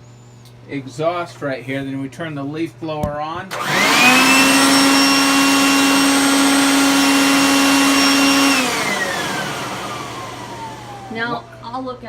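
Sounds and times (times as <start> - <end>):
leaf blower whining: 3.5 - 11.8.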